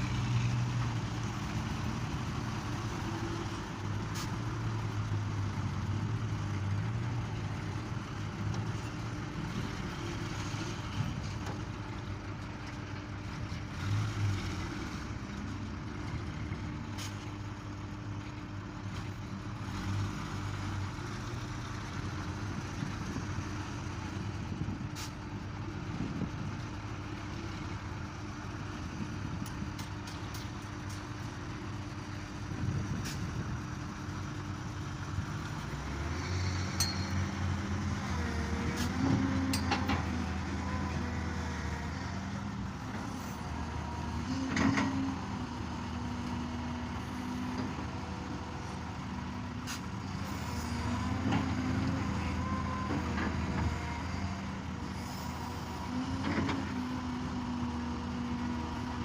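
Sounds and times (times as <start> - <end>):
excavator diesel engine under load: 0.0 - 59.0
sharp metal clanks: 36.8 - 37.3.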